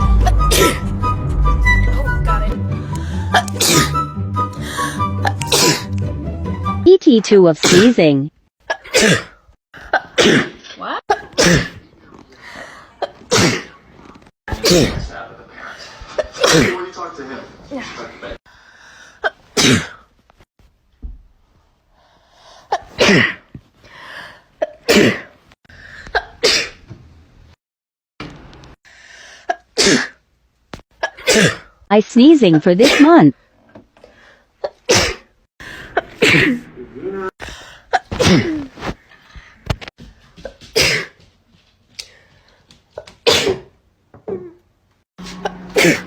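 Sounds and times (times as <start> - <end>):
person sneezing: 0.2 - 0.8, 3.3 - 4.0, 5.2 - 5.9, 7.6 - 7.9, 8.7 - 9.4, 10.2 - 11.8, 13.0 - 13.8, 14.5 - 15.0, 19.2 - 20.1, 22.7 - 23.5, 24.9 - 25.3, 26.2 - 26.8, 29.8 - 30.2, 31.0 - 31.7, 32.8 - 33.2, 34.6 - 35.3, 36.0 - 36.6, 37.9 - 38.9, 40.7 - 41.2, 43.2 - 43.7, 45.2 - 46.0.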